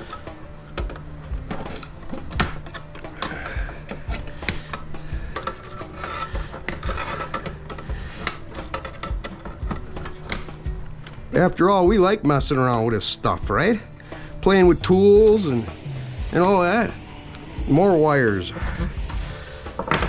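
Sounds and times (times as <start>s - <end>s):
hand tools clicking on metal: 0.0s - 11.2s.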